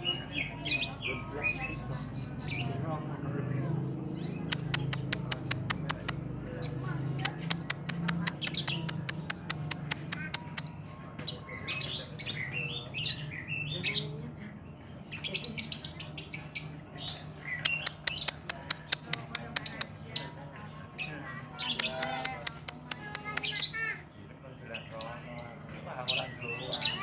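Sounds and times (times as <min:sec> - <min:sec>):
lovebird chattering and chirping: 0:04.2 - 0:10.7, 0:15.1 - 0:20.4, 0:21.0 - 0:23.9.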